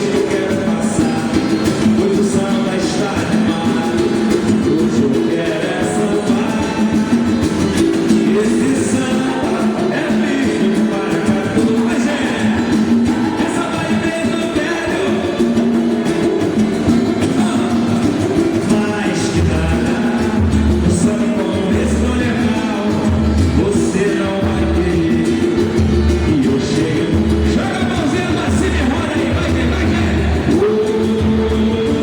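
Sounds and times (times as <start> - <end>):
lead vocal singing: 0.0 - 32.0
live samba band: 0.0 - 32.0
deep bass beat: 16.8 - 32.0.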